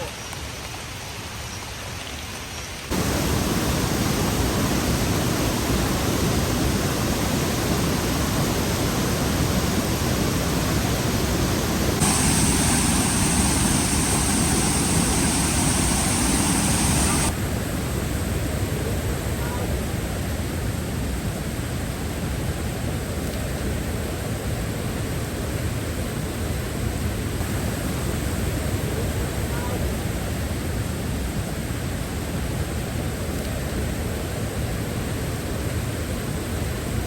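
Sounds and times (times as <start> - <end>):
waterfall rushing: 2.9 - 17.4.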